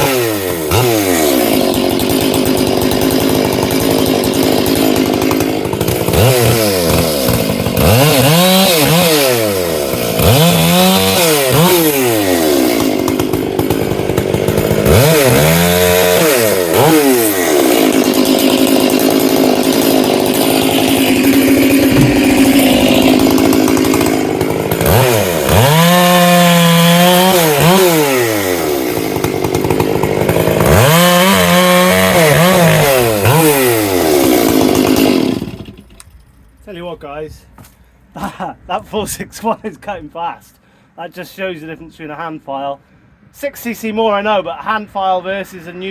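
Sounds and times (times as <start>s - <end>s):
chainsaw cutting firewood: 0.0s - 36.3s.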